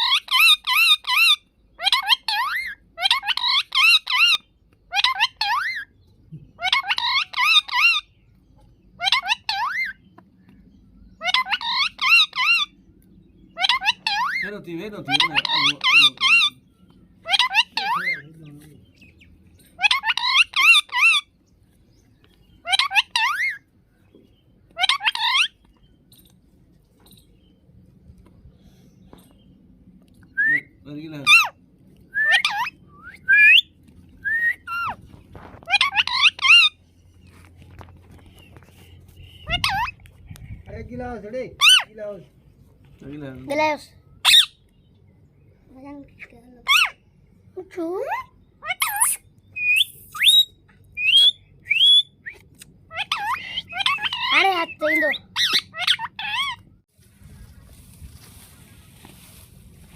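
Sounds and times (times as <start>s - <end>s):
parrot warbling calls: 0.0s - 5.9s, 6.6s - 8.1s, 9.0s - 10.0s, 11.2s - 12.7s, 13.5s - 16.6s, 17.2s - 18.3s, 19.8s - 21.3s, 22.6s - 23.7s, 24.8s - 25.6s, 31.2s - 36.8s, 39.4s - 40.0s, 41.6s - 41.9s, 44.2s - 44.6s, 46.6s - 47.0s, 48.1s - 52.2s, 52.9s - 56.7s
parrot warbling whistles: 48.7s - 56.6s.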